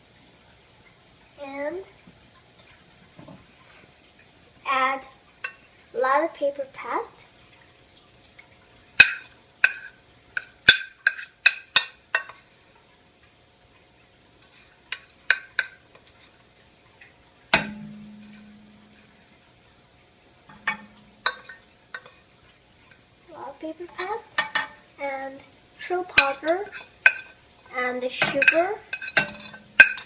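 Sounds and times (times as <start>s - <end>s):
utensil clinking against metal pot: 17.5s - 19.1s, 20.5s - 22.2s, 23.8s - 24.8s, 26.1s - 27.4s, 28.0s - 30.0s
knock setting pot ringing: 17.6s - 19.0s, 20.5s - 21.5s.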